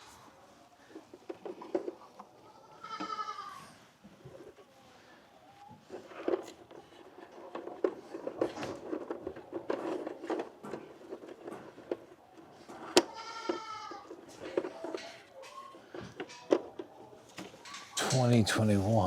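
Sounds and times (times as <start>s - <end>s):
goat bleating: 2.4s - 3.8s, 13.0s - 14.2s
handling clicks and knocks: 5.8s - 19.0s.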